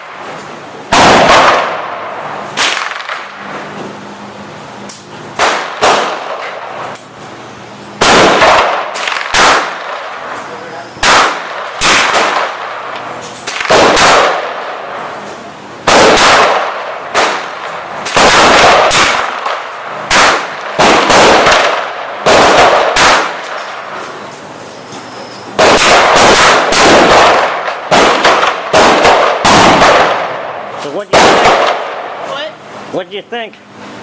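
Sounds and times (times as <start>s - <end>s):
gunshots with echo: 0.9s - 3.4s, 5.4s - 6.7s, 8.0s - 10.3s, 11.0s - 15.1s, 15.8s - 24.0s, 25.6s - 32.2s.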